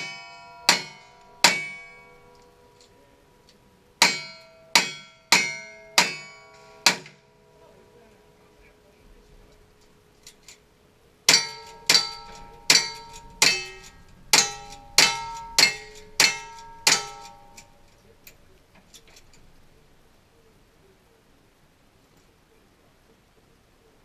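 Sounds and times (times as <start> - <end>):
steel target ringing: 0.0 - 7.6, 11.3 - 19.8.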